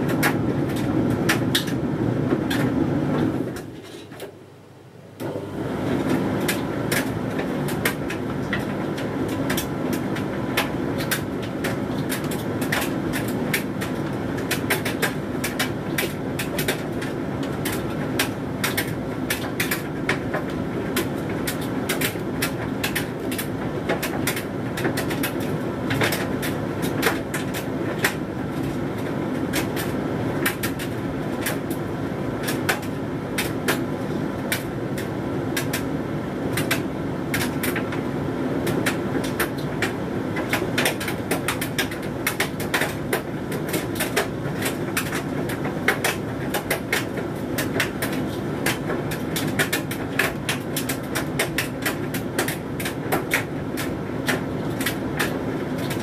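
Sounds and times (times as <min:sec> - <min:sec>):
laundry clicking and knocking in drum: 0:00.0 - 0:03.7, 0:06.0 - 0:31.8, 0:32.4 - 0:35.9, 0:36.5 - 0:56.0
tumble dryer humming: 0:05.2 - 0:56.0.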